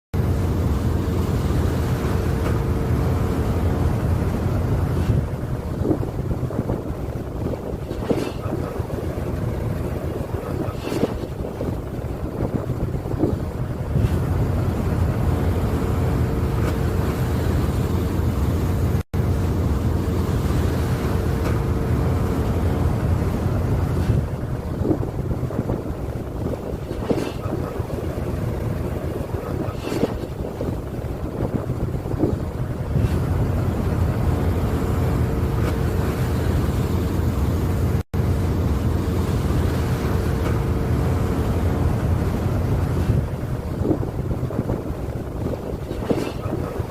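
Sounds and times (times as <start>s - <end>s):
wind: 0.1s - 46.9s
sea noise: 0.2s - 46.9s
ship engine droning: 0.2s - 46.9s.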